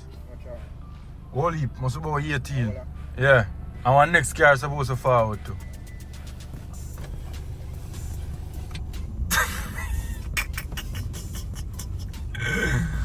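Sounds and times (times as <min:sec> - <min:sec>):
car engine rumbling: 0:00.0 - 0:13.0.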